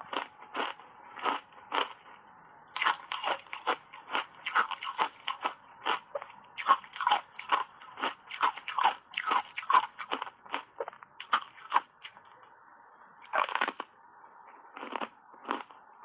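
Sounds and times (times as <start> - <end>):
ice being crunched by teeth: 2.8 - 12.2, 13.3 - 13.9.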